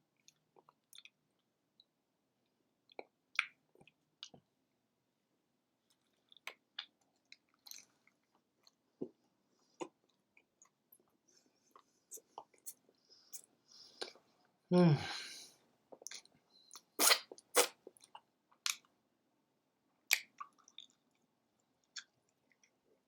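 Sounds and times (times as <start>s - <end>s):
person chewing: 15.9s - 18.8s, 20.1s - 21.2s.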